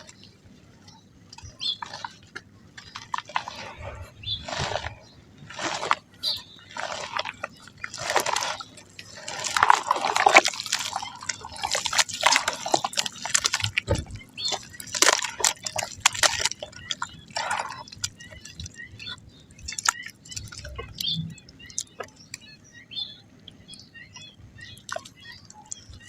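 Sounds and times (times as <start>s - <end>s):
mud crackling: 0.0s - 26.0s
water splashing onto mud: 4.4s - 18.7s.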